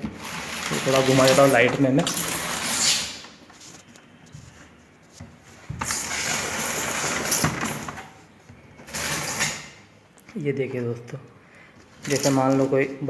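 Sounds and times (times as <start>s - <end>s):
plastic scuffing and rustling: 0.0s - 8.8s.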